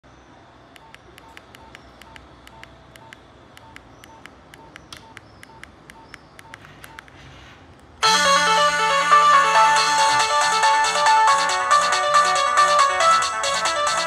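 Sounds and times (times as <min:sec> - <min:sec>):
phone keypad clicks: 0:00.8 - 0:07.2.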